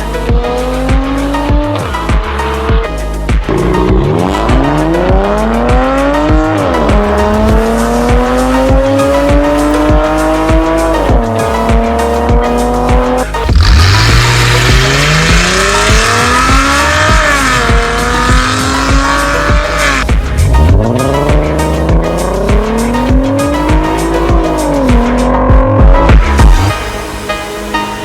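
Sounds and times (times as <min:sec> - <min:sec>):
sports car engine accelerating: 0:00.0 - 0:26.8
background music with beat: 0:00.0 - 0:28.0.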